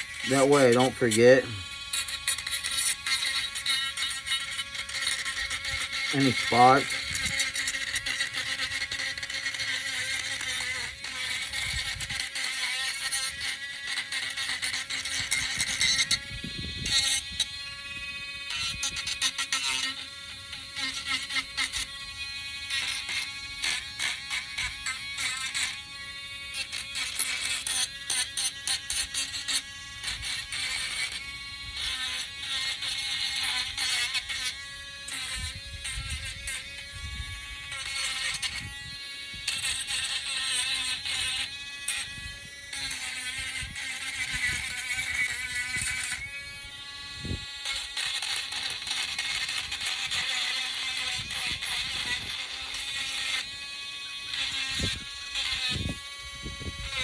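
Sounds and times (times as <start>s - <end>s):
electric sander whining: 0.0s - 57.0s.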